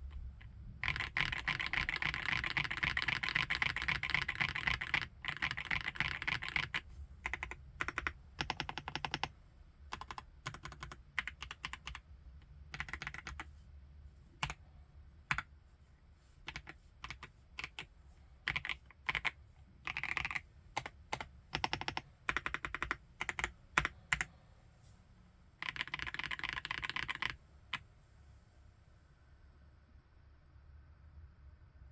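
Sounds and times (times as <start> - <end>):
mechanical keyboard typing: 0.8 - 9.3, 9.9 - 12.0, 12.7 - 13.4, 16.5 - 17.8, 18.5 - 24.3, 25.6 - 27.8.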